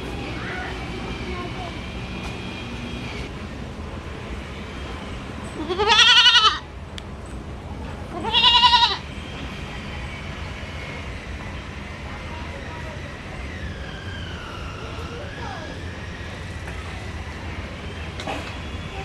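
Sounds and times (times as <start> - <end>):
goat bleating: 5.6 - 6.6, 8.1 - 9.0.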